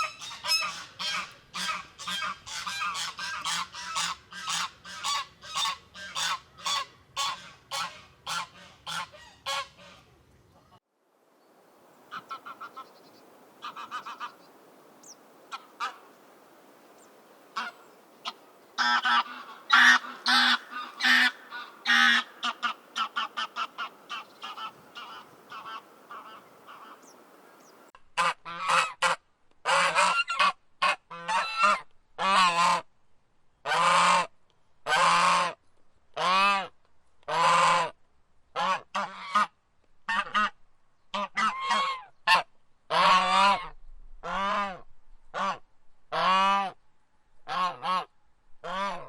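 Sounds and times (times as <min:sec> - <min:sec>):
geese honking: 0:00.0 - 0:10.1, 0:12.1 - 0:13.0, 0:13.6 - 0:14.4, 0:15.0 - 0:16.2, 0:17.5 - 0:32.8, 0:41.2 - 0:44.7.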